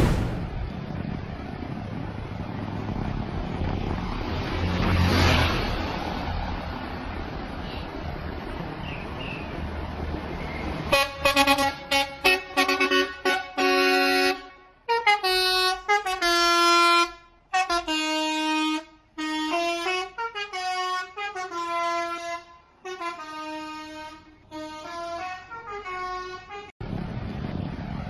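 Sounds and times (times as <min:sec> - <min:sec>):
steady rushing noise: 0:00.0 - 0:04.3.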